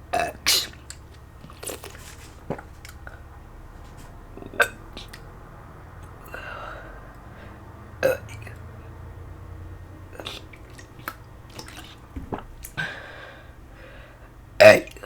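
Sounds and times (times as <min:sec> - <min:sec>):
person burping: 0:00.1 - 0:03.3, 0:04.3 - 0:05.3, 0:08.0 - 0:08.6, 0:14.6 - 0:15.0.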